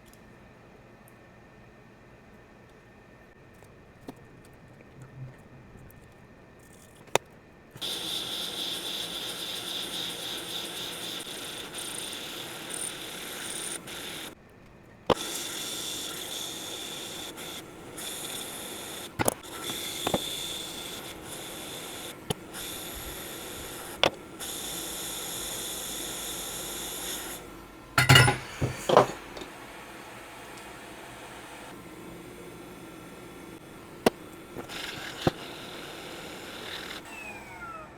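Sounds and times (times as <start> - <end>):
hot air blower hissing and whining: 7.8 - 14.4, 15.1 - 37.9
tools tapping on bench: 28.0 - 29.5.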